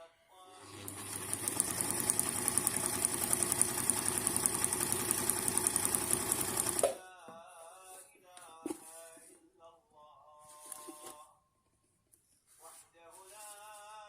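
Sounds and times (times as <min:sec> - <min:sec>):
sewing machine stitching rattle: 0:00.6 - 0:06.8.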